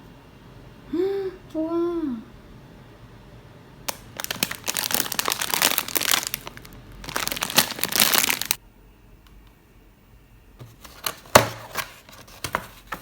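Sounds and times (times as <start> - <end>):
packaging crumpled by hand: 3.9 - 8.6.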